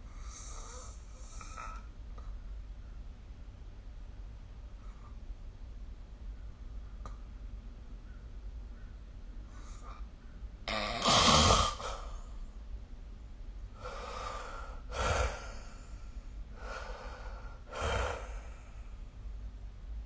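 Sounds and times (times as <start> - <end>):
faint breaths: 0.0 - 2.4, 8.1 - 10.1, 13.7 - 19.2
person snoring: 10.7 - 12.2, 17.7 - 18.6.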